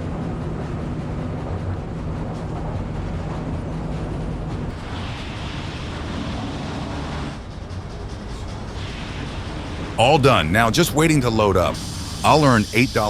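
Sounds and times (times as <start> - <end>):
diesel truck engine running: 0.0 - 13.0
steady hiss: 4.7 - 13.0.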